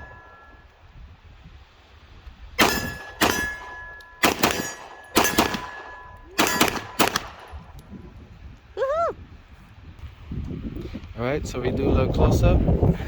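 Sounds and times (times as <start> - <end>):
short metallic ring: 0.0 - 0.7, 2.6 - 7.2
pistol shots: 2.6 - 7.8.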